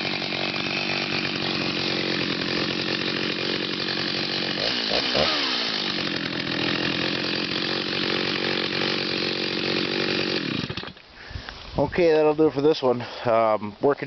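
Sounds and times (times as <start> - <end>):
chainsaw running at high revs: 0.0 - 11.0.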